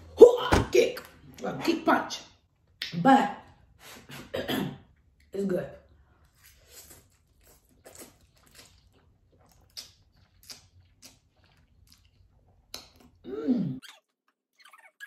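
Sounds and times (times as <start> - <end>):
person chewing noodles: 6.2 - 13.3
wet mouth smacks and clicks: 12.7 - 13.1.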